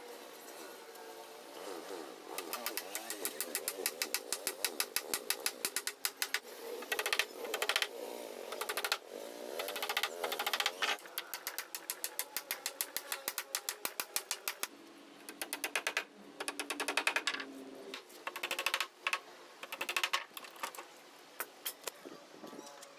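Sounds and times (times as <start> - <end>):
rapid sharp clicks: 2.4 - 7.9, 8.5 - 9.0, 9.6 - 14.7, 18.3 - 20.8.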